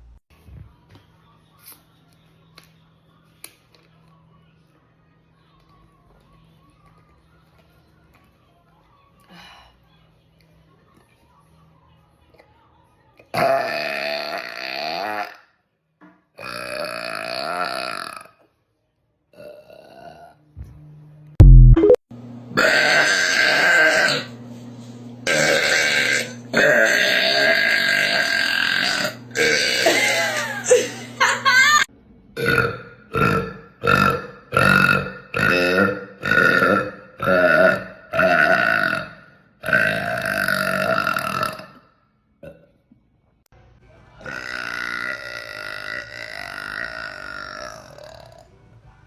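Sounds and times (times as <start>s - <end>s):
girl burping: 25.3s - 31.9s.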